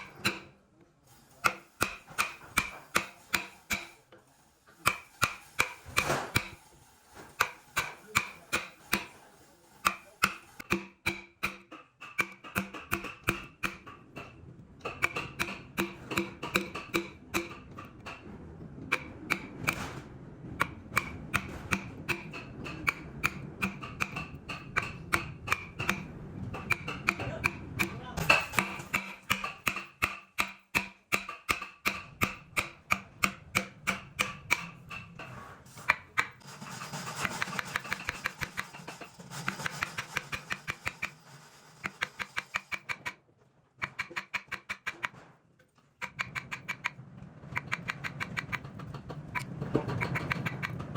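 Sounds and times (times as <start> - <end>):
mallet striking chisel: 0.0 - 0.5, 1.4 - 4.0, 4.9 - 6.6, 7.4 - 9.2, 9.8 - 18.2, 18.9 - 19.9, 20.6 - 36.4, 37.2 - 38.8, 39.5 - 41.2, 41.8 - 43.2, 43.8 - 45.2.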